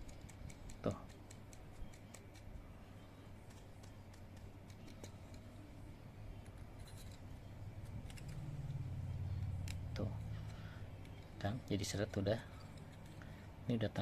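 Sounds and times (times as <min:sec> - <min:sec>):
low hum: 0:02.6 - 0:13.6.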